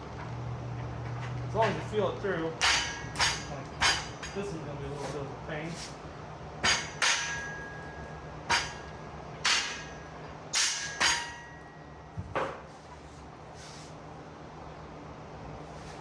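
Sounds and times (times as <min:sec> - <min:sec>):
hammer striking metal: 0:02.6 - 0:04.4, 0:06.6 - 0:11.8.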